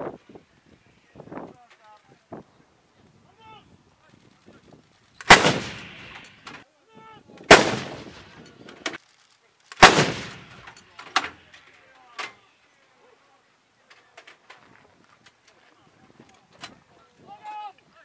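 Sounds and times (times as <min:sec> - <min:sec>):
faint gunshots: 0:05.2 - 0:06.5, 0:07.5 - 0:08.4, 0:09.8 - 0:11.3
loud gunshots echoing: 0:05.3 - 0:06.4, 0:07.5 - 0:08.3, 0:09.8 - 0:10.7.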